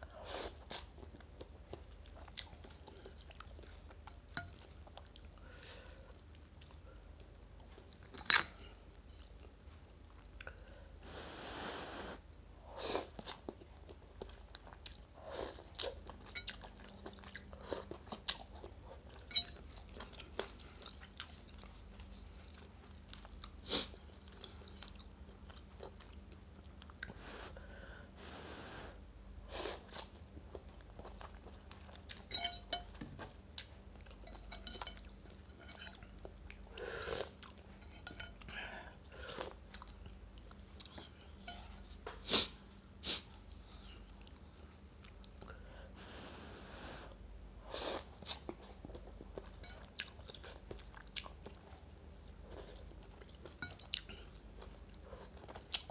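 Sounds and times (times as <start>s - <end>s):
chewing: 0.6s - 10.6s, 13.0s - 27.2s, 29.7s - 42.5s, 47.9s - 55.9s.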